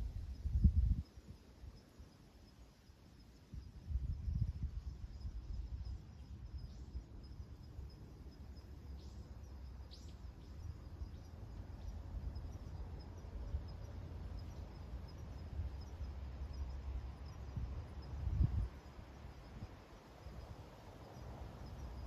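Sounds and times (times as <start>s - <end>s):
wind rumbling on microphone: 0.0s - 1.7s, 3.5s - 7.5s, 14.4s - 22.0s
insect chirping: 0.0s - 22.0s.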